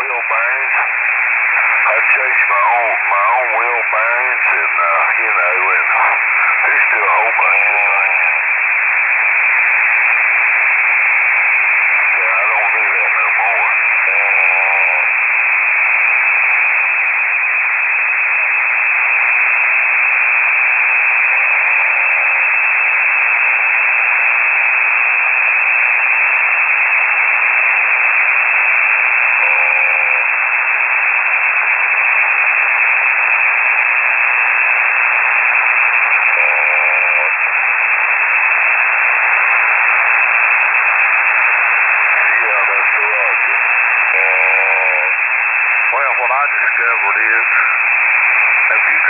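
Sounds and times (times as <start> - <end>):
shortwave radio static hiss: 0.0 - 49.0.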